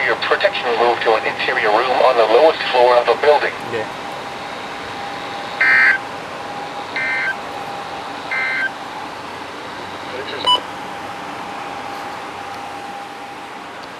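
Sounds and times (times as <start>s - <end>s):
faint steady whine: 0.0s - 13.9s
warbling digital data tones: 4.4s - 6.0s, 6.9s - 7.4s, 8.3s - 8.8s
brief beep: 8.3s - 8.7s, 10.4s - 10.6s.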